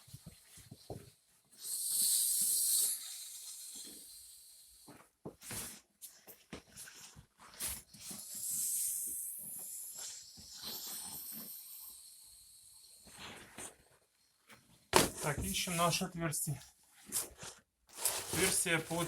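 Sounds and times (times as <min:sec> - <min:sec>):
air hissing from tube valve: 0:01.6 - 0:04.8
rubber tube knocks and rustles: 0:15.0 - 0:15.7.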